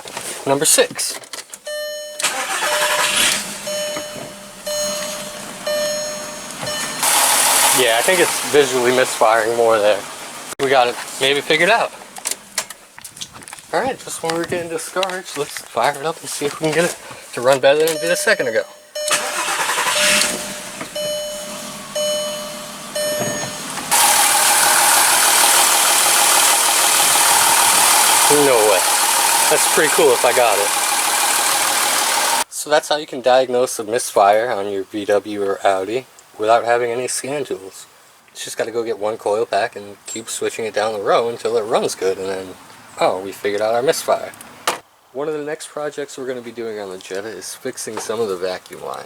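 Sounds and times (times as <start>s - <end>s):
car warning chime beeping: 1.7s - 9.0s, 17.8s - 32.4s
car engine starting: 1.7s - 10.6s, 18.0s - 32.4s
engine idling roughly misfiring: 2.2s - 9.4s, 19.0s - 32.4s.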